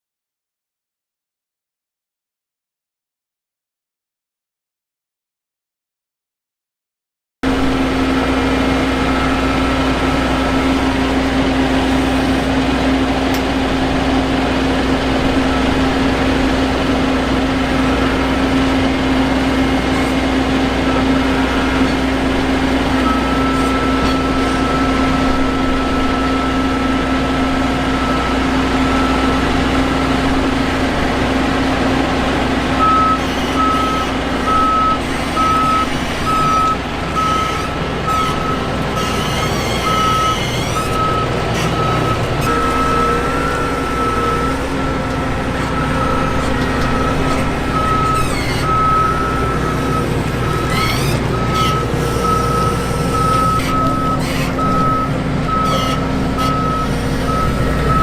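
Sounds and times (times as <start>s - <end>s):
combine harvester running: 7.4s - 58.0s
warning alarm beeps: 32.8s - 39.1s, 39.8s - 45.0s, 45.7s - 50.7s, 51.3s - 58.0s.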